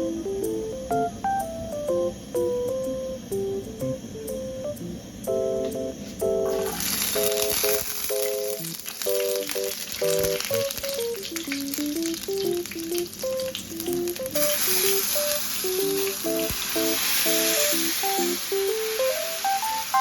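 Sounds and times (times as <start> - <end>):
soft background music: 0.0 - 20.0
food sizzling in a pan: 6.5 - 20.0.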